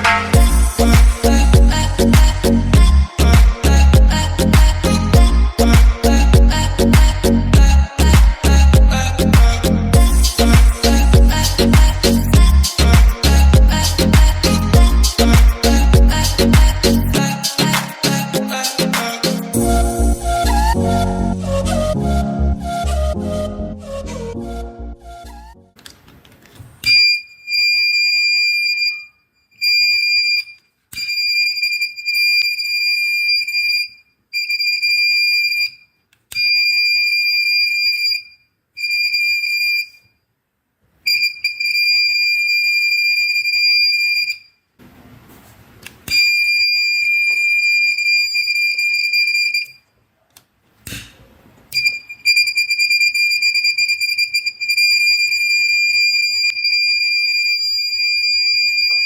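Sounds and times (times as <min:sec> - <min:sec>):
fire alarm buzzer: 0:26.9 - 0:40.1, 0:41.1 - 0:44.6, 0:46.1 - 0:49.9, 0:51.8 - 0:59.0.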